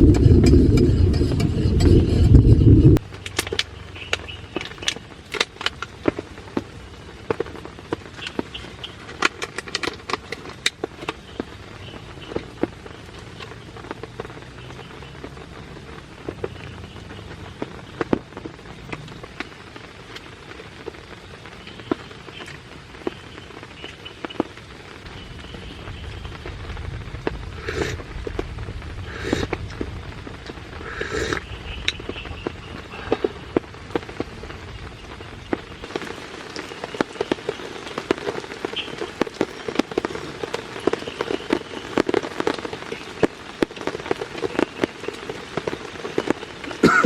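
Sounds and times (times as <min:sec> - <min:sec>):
rain hissing: 0:00.0 - 0:47.0
raindrops ticking on a surface: 0:00.0 - 0:47.0.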